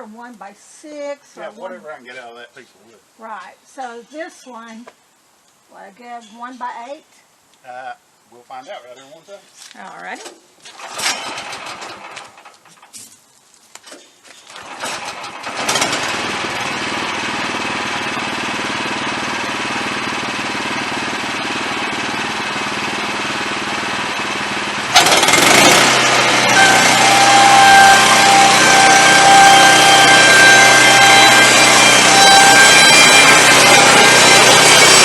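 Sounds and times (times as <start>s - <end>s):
saw blade whining cutting wood: 10.7s - 12.5s, 14.3s - 35.0s
band sawmill running: 10.7s - 12.8s, 14.5s - 35.0s.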